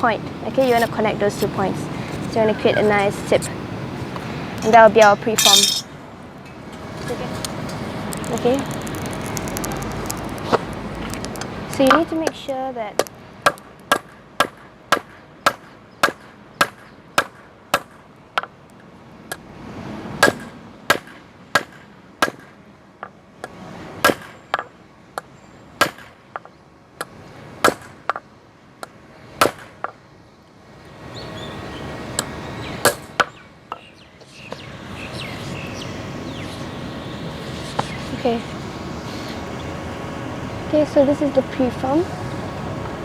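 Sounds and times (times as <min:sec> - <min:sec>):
steady rushing noise: 0:00.0 - 0:14.9, 0:17.4 - 0:24.3, 0:34.4 - 0:43.0
hammer clanging on hot steel: 0:05.4 - 0:05.9.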